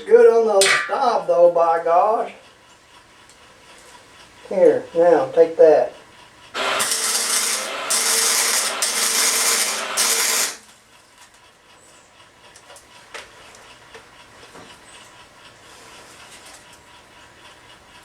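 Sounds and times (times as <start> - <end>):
welding arc crackling: 6.6 - 10.7.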